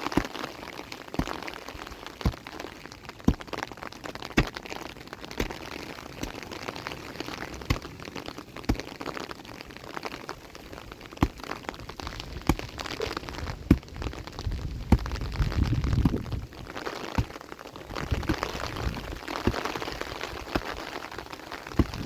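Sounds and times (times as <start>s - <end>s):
rain pattering on hard surface: 0.0s - 22.0s
low rumbling gust: 11.9s - 16.7s.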